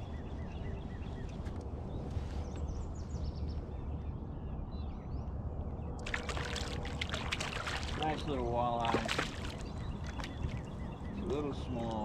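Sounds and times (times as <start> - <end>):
small birds chirping: 0.0 - 12.0
wind: 0.0 - 12.0
water: 5.9 - 12.0.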